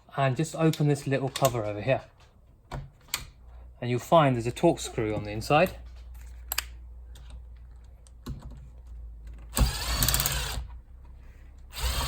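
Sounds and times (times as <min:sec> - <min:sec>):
screwdriver turning screw: 0:09.5 - 0:10.7, 0:11.7 - 0:12.0.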